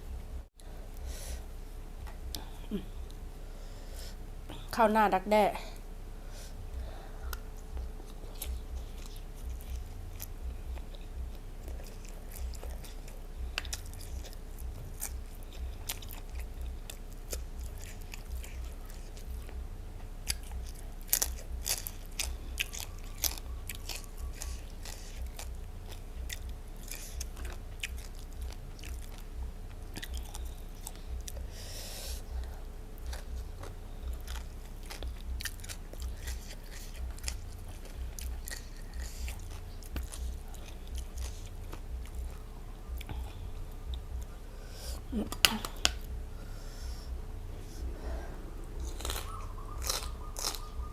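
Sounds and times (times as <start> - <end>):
chewing with crunches: 6.8 - 50.9.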